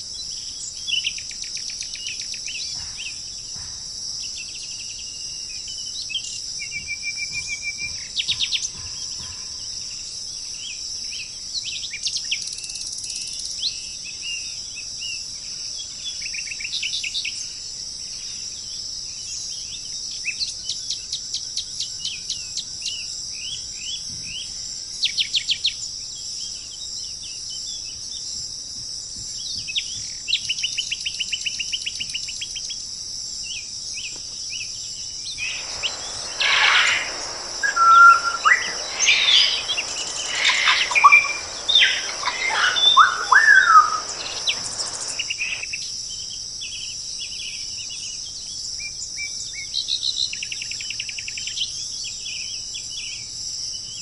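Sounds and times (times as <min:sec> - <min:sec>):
high drone of insects: 0:34.9 - 0:45.7
wild birds calling: 0:35.4 - 0:45.6.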